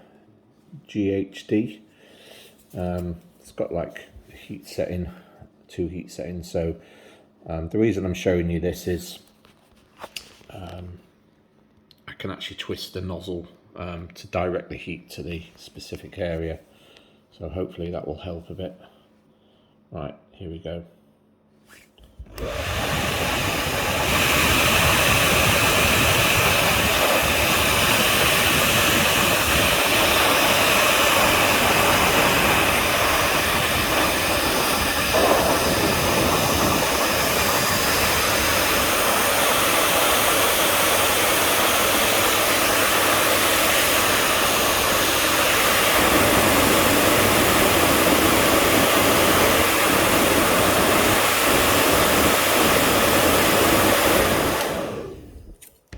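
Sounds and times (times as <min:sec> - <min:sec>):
hair dryer blowing: 0:22.0 - 0:55.6.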